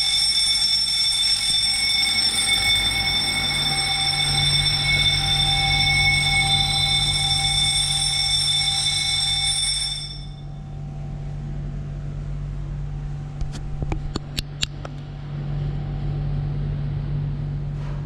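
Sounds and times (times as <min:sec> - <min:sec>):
fire alarm tone: 0:00.0 - 0:10.9
low hum: 0:00.0 - 0:18.0.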